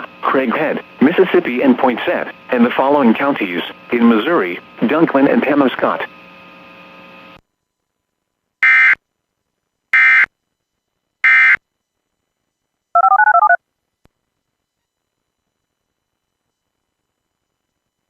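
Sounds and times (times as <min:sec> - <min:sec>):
digital data tone bursts: 0:13.0 - 0:13.6
paired electronic beeps: 0:13.0 - 0:13.6.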